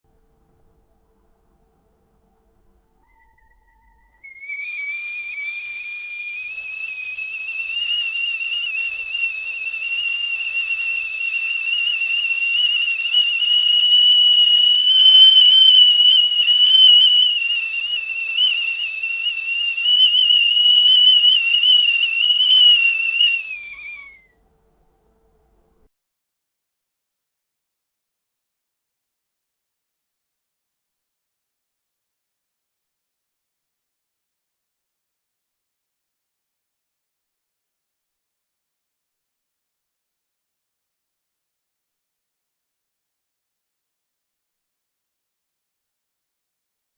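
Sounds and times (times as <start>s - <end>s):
tea kettle whistling: 3.0s - 24.4s.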